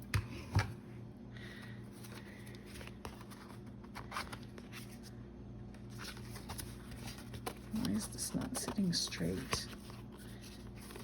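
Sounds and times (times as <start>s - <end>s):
paper rustling: 5.9s - 11.0s.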